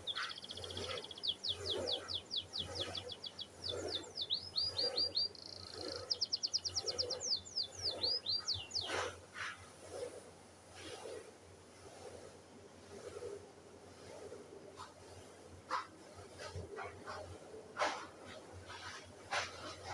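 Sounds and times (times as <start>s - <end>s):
canary singing fast trills: 0.0s - 9.1s.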